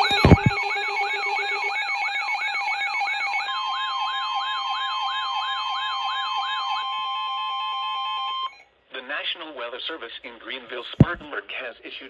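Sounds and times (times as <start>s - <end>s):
steady alarm tones: 0.0s - 8.4s
electronic siren-like sweeps: 0.0s - 8.6s.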